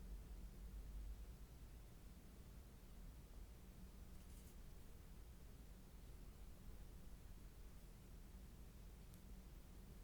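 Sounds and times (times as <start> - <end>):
faint click: 9.0 - 9.3.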